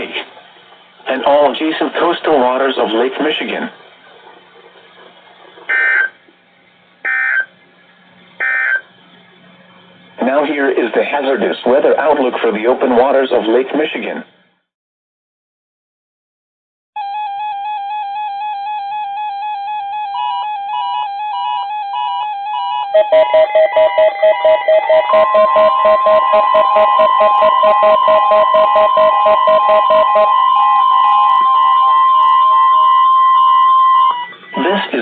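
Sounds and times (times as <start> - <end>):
rapidly pulsing alarm: 5.7 - 6.2, 7.0 - 7.6, 8.4 - 9.0, 17.0 - 35.0
beeping alarm: 8.4 - 8.9, 17.0 - 35.0
steady alert tone: 17.0 - 34.9
warbling alert tone: 17.0 - 34.9.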